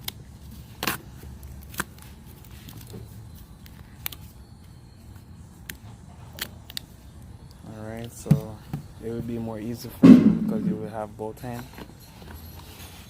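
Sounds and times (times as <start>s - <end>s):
low steady hum: 10.0s - 11.3s.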